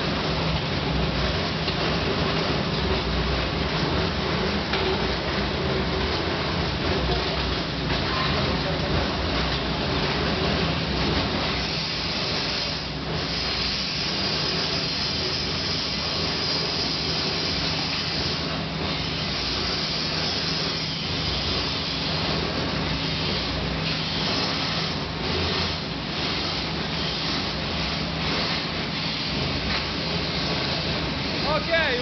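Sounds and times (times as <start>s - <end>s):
furnace rushing hiss: 10.1s - 32.0s.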